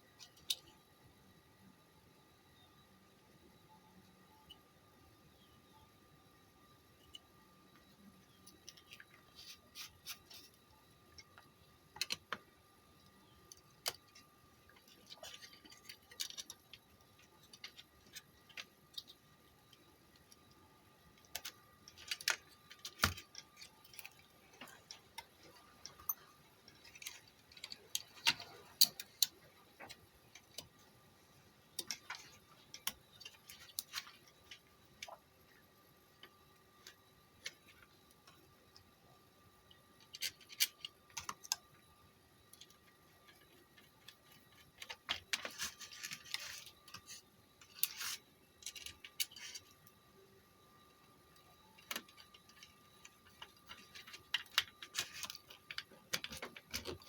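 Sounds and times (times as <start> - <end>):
small tools clicking and scraping: 7.0 - 20.6, 21.2 - 30.8, 31.7 - 35.2, 39.7 - 41.8, 42.4 - 50.0, 51.3 - 57.0.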